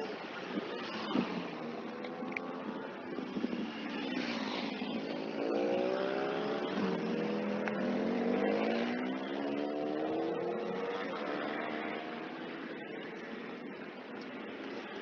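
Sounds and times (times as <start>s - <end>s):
traffic noise: 0.0s - 15.0s
vehicle engine accelerating: 4.0s - 12.6s.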